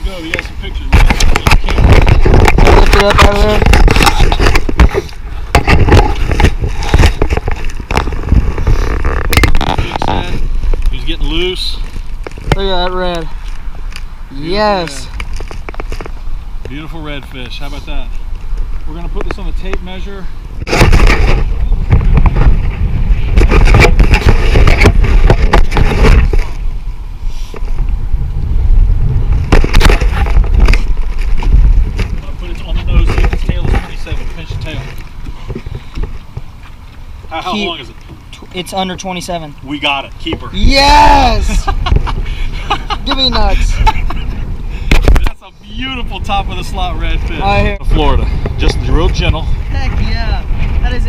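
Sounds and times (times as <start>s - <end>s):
wind buffeting microphone: 0.0s - 38.3s, 39.6s - 51.0s
knocks and scrapes from handling: 0.3s - 10.3s, 20.6s - 26.6s.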